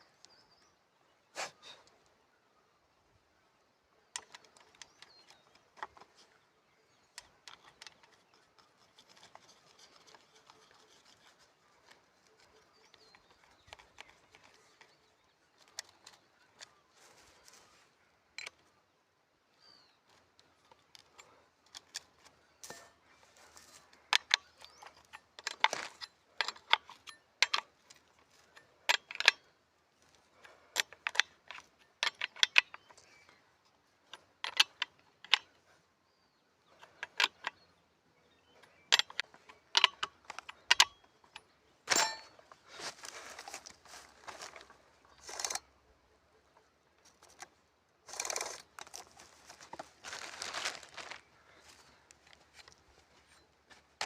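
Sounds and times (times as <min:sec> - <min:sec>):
clicks and metallic clatter: 0:04.1 - 0:06.4, 0:07.1 - 0:15.0, 0:20.1 - 0:29.5, 0:30.4 - 0:33.4, 0:34.0 - 0:35.6, 0:38.6 - 0:42.6
rustling: 0:07.2 - 0:18.0, 0:41.3 - 0:45.6, 0:47.0 - 0:54.0.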